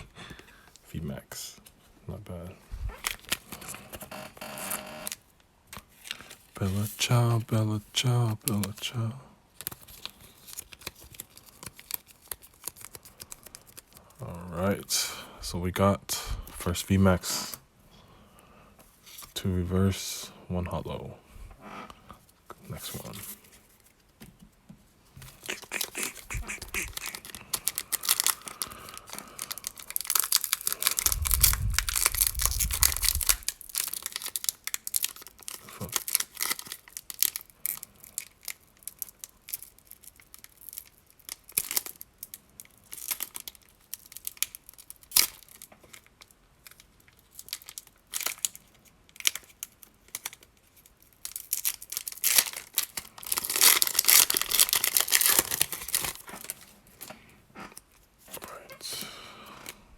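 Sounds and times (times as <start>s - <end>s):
foil wrapper tearing and crinkling: 3.0s - 3.8s, 9.6s - 14.2s, 25.3s - 56.8s
low rumble: 31.0s - 33.5s.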